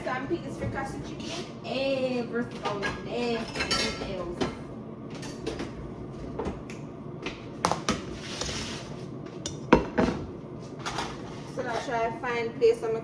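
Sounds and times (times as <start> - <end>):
dishes and utensils clinking: 2.5 - 5.8.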